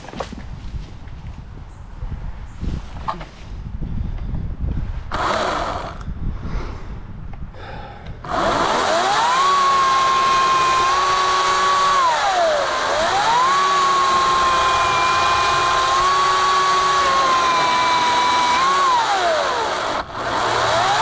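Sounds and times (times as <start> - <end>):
battery chainsaw whining: 5.1 - 6.0, 8.2 - 21.0.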